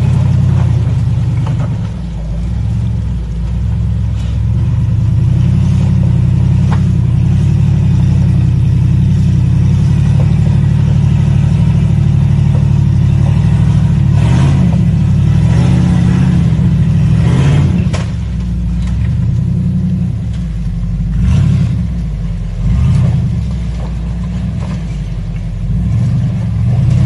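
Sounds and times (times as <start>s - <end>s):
light clatter: 0.0s - 2.8s, 17.8s - 20.8s, 22.9s - 25.7s
engine running under load: 0.0s - 27.0s.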